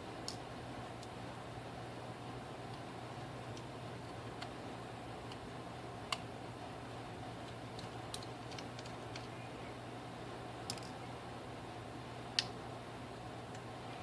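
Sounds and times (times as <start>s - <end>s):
steady low hum: 0.0s - 14.0s
small tools clicking: 7.4s - 9.3s, 10.7s - 11.0s.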